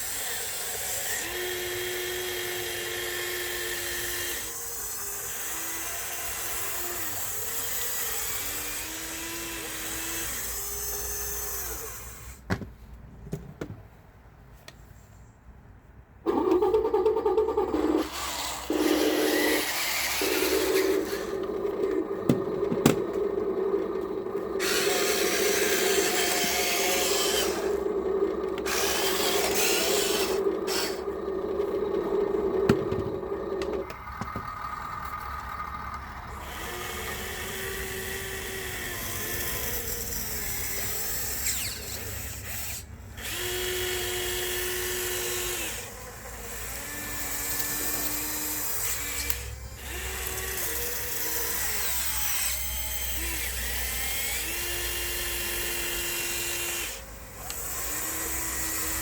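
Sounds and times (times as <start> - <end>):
small electric motors whining: 0.0 - 12.4, 16.2 - 59.0.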